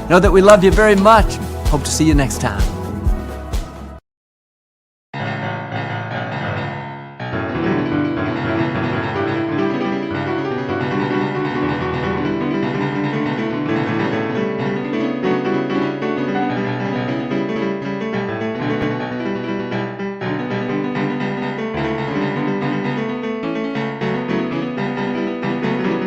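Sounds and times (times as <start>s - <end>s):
instrumental piano music: 6.2s - 26.0s.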